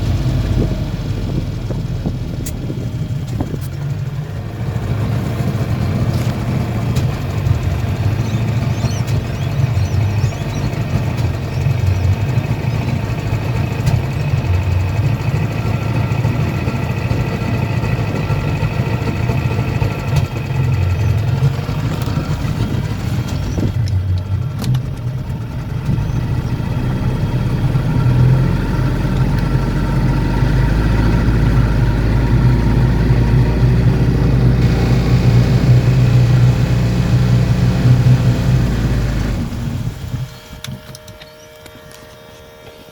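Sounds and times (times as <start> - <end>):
engine running and sneezing: 25.9 - 40.6.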